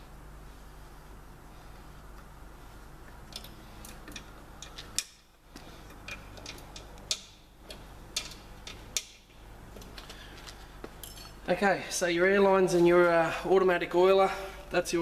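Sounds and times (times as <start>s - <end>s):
tools clicking and tapping: 5.9s - 10.1s.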